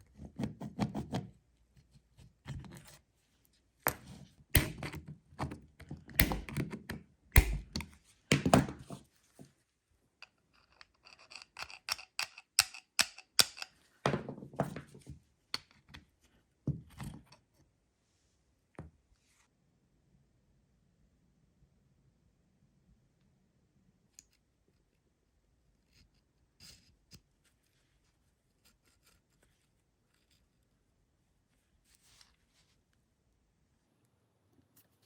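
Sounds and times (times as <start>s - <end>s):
metal parts knocking and clicking: 4.6s - 8.9s, 10.6s - 13.8s.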